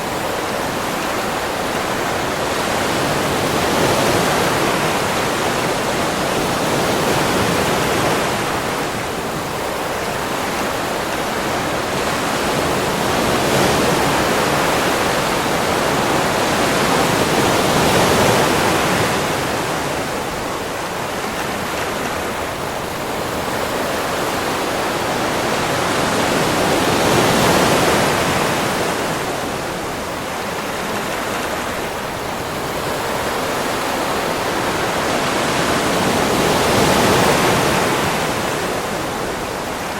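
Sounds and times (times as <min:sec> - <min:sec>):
ocean surf washing onto beach: 0:00.0 - 0:39.9.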